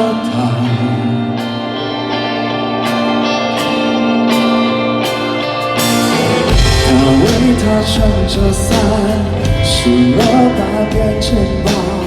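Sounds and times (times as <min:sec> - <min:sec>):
electric guitar: 0:00.0 - 0:12.0
live rock band playing: 0:00.0 - 0:12.0
bass and drums: 0:04.4 - 0:12.0.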